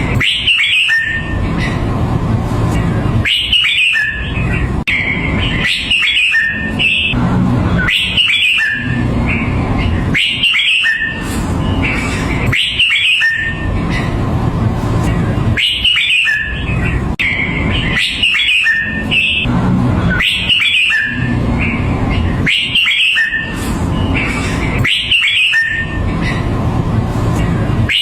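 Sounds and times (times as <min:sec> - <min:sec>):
bulbul singing warbled whistles: 0:00.1 - 0:01.4, 0:03.2 - 0:07.2, 0:07.8 - 0:13.7, 0:15.6 - 0:19.5, 0:20.1 - 0:26.4.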